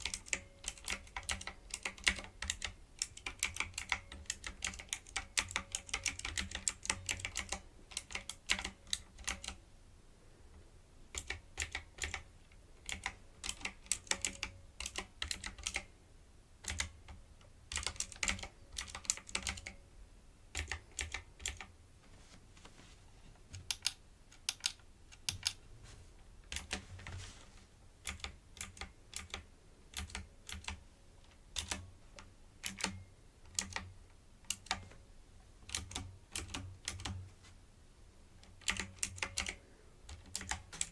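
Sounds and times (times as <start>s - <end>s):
clicky keyboard typing: 0.0s - 9.6s, 11.1s - 15.9s, 16.6s - 19.8s, 20.5s - 21.7s, 23.5s - 25.6s, 26.4s - 27.2s, 28.0s - 35.0s, 35.6s - 37.2s, 38.4s - 40.9s.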